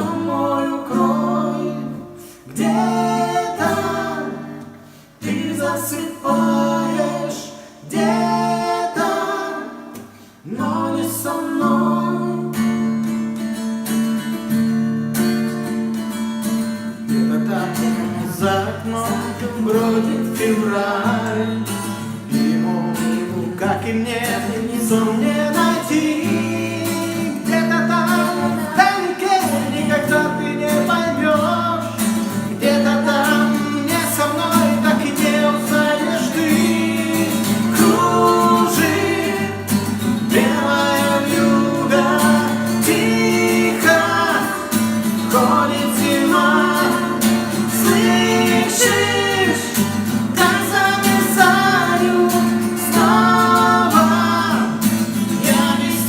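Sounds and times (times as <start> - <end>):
woman singing: 0.0 - 4.5, 22.5 - 31.6
acoustic guitar: 0.0 - 56.0.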